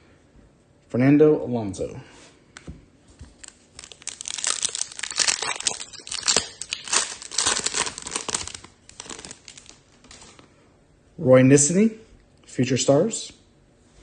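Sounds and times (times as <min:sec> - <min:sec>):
plastic wrapper crinkling: 0:03.2 - 0:10.5.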